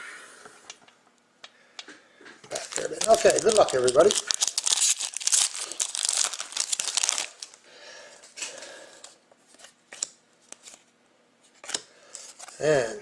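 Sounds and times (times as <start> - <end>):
cards rustling and clicking: 2.5 - 7.6, 11.5 - 12.6
wrapper crinkling as torn open: 2.5 - 7.6.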